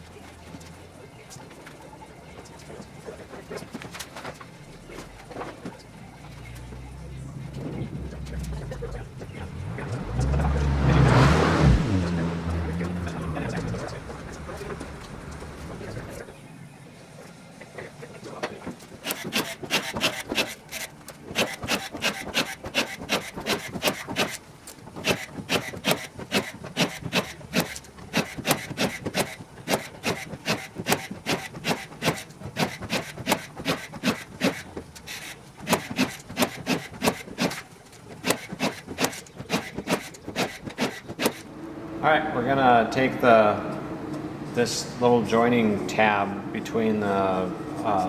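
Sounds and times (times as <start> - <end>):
quick repeated scraping strokes: 18.8 - 41.5.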